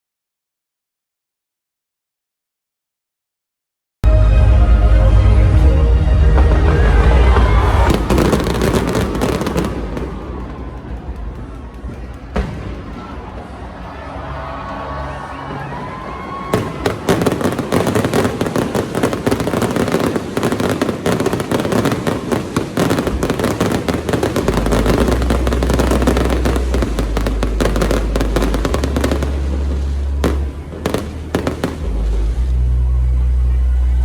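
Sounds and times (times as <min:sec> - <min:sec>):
fireworks crackling and banging: 0:06.3 - 0:14.7, 0:15.7 - 0:32.6.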